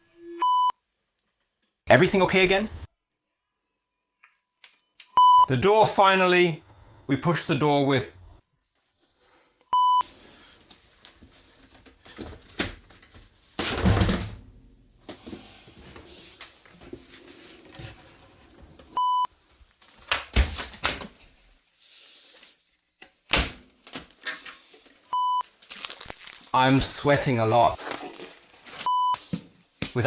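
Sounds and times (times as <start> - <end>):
short bleep tones: 5.2 - 5.5.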